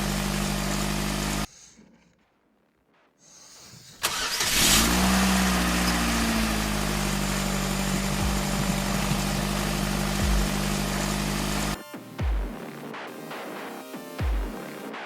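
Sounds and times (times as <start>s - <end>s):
vehicle engine starting and idling: 0.0s - 1.5s, 4.0s - 11.8s.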